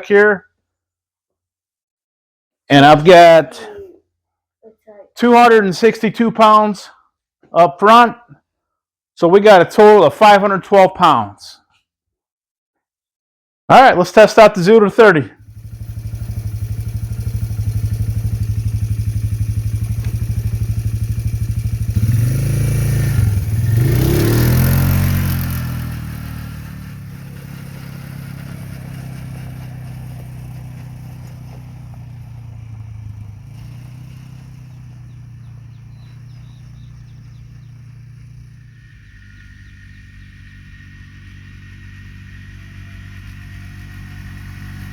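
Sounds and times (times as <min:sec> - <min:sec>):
atv engine idling and revving: 0:15.4 - 0:44.9.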